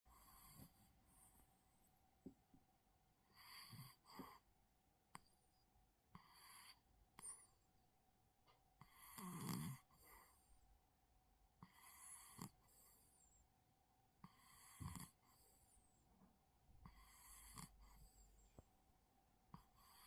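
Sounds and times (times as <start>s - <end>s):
cat snoring softly: 0.1s - 1.4s, 3.2s - 4.4s, 6.1s - 7.6s, 8.8s - 10.6s, 11.6s - 13.3s, 14.2s - 16.0s, 16.8s - 18.6s, 19.5s - 20.0s.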